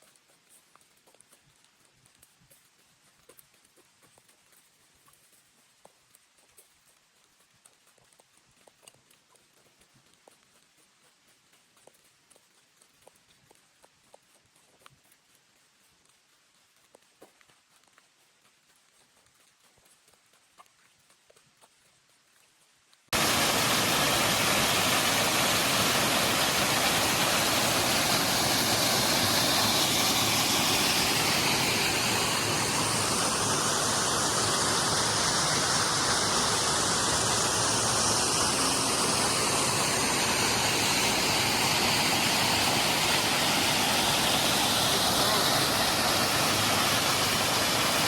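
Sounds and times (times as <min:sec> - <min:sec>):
rushing water: 0:23.1 - 0:48.0.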